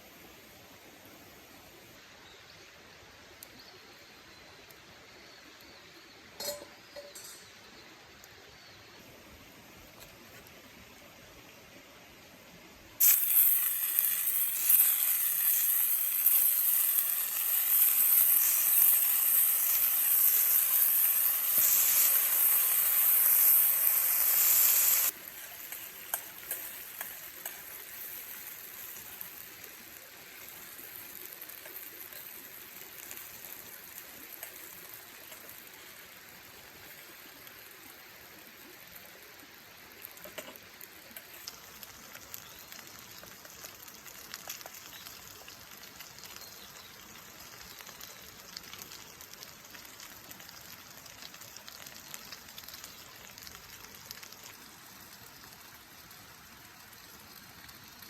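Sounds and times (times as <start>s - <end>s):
faint crackles and ticks: 3.2s - 8.8s, 9.8s - 10.8s, 13.0s - 58.0s
food sizzling in a pan: 12.6s - 58.0s.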